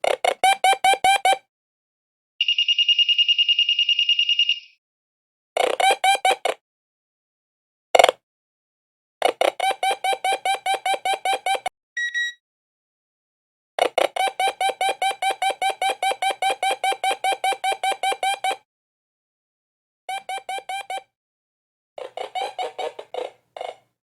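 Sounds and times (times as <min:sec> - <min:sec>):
metal detector beeping: 0:02.4 - 0:04.8, 0:09.6 - 0:12.4, 0:14.2 - 0:18.6, 0:20.1 - 0:21.1.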